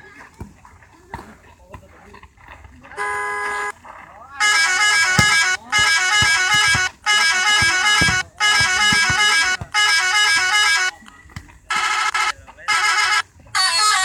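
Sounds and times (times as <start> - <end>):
multi-tone bus horn tunes: 3.0 - 3.7, 4.4 - 10.9, 11.7 - 14.0.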